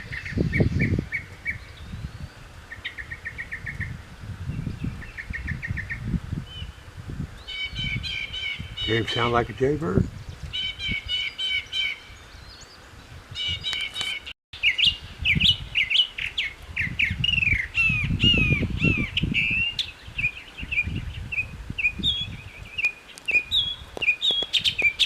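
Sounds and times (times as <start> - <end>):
mockingbird singing: 7.4 - 12.8, 13.4 - 25.0.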